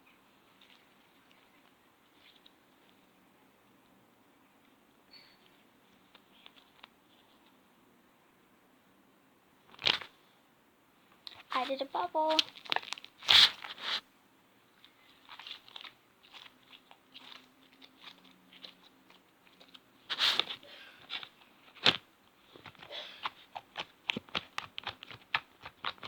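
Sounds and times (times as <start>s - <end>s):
slime crackling and squelching: 11.3s - 14.0s, 15.0s - 26.0s.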